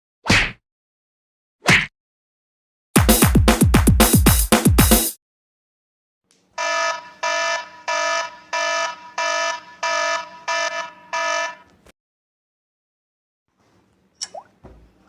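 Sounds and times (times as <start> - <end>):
electronic alarm buzzer beeping: 6.6 - 11.7.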